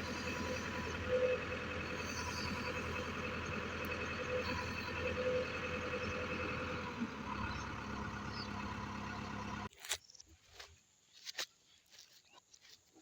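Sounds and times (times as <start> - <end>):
diesel engine running: 0.0 - 9.7.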